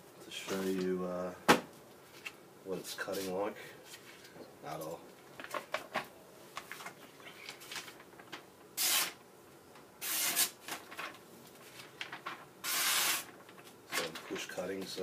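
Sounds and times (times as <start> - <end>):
small clicks and rustles: 3.9 - 8.5, 10.7 - 12.5, 13.3 - 15.0.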